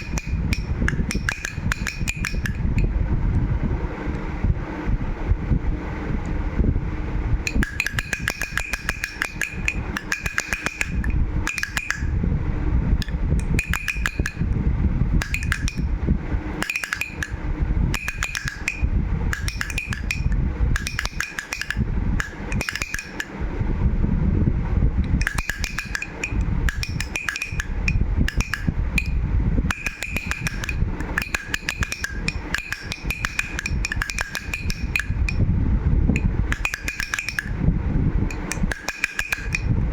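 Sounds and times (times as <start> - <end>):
baby rattle clicking: 0.0 - 2.9, 7.5 - 12.2, 13.0 - 14.6, 15.2 - 15.9, 16.6 - 23.4, 25.1 - 35.4, 36.2 - 37.6, 38.3 - 39.8
low handling rumble: 0.0 - 36.8.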